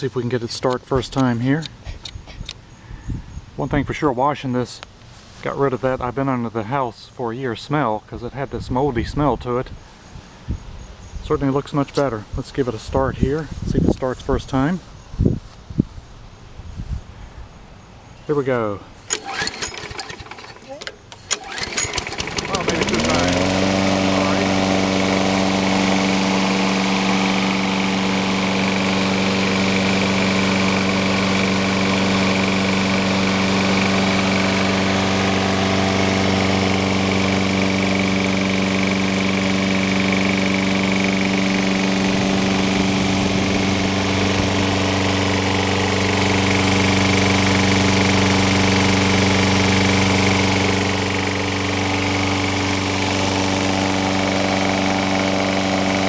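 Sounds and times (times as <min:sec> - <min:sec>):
lawn mower engine running: 0:19.0 - 0:56.0.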